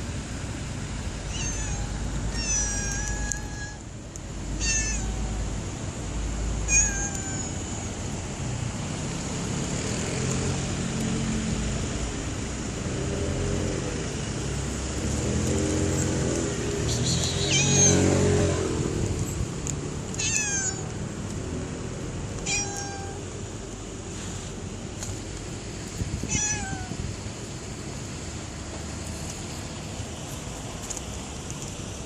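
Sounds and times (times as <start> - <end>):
cats meowing: 1.3 - 3.8, 4.6 - 5.5, 6.6 - 8.0, 17.2 - 18.7, 20.1 - 21.0, 22.4 - 23.3, 26.2 - 27.0.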